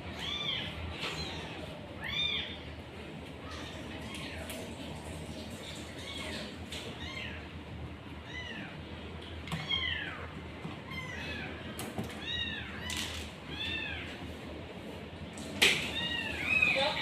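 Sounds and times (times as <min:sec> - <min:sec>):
cat meowing: 0:00.1 - 0:02.6, 0:09.6 - 0:14.2, 0:15.8 - 0:17.0.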